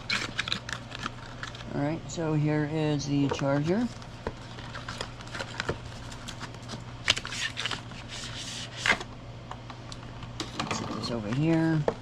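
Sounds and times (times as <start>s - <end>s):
packaging rustling and scraping: 0.0s - 1.8s, 3.2s - 9.1s
steady low hum: 0.0s - 12.0s.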